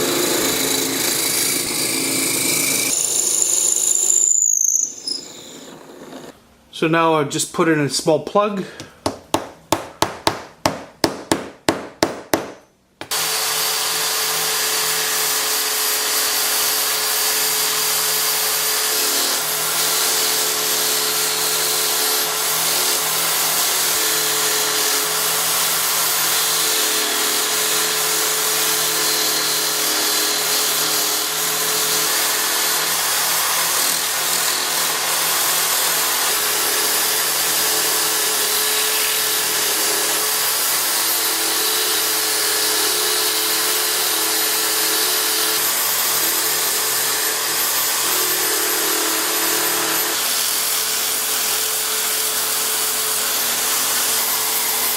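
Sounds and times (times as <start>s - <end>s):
lathe tool cutting wood: 0.0s - 6.3s, 13.1s - 54.9s
wood lathe motor hum: 0.0s - 6.3s.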